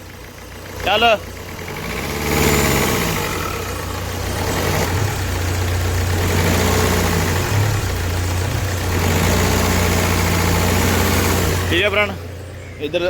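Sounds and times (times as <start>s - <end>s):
diesel engine misfiring: 0.0s - 13.0s.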